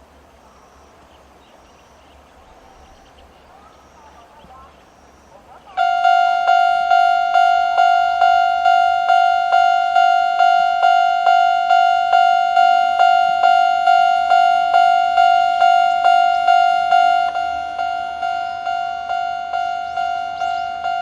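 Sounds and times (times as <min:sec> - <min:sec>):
level-crossing alarm bell: 0:05.0 - 0:21.0.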